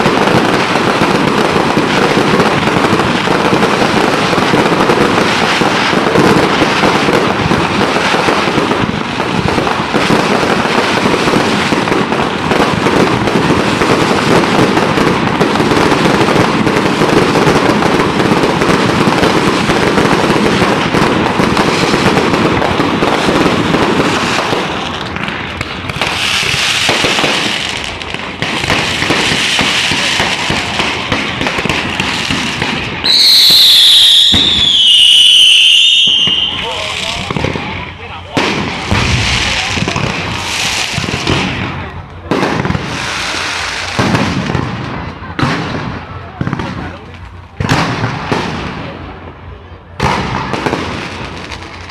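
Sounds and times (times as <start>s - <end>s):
fireworks crackling and banging: 0.0s - 51.9s
whistling fireworks: 0.0s - 51.9s.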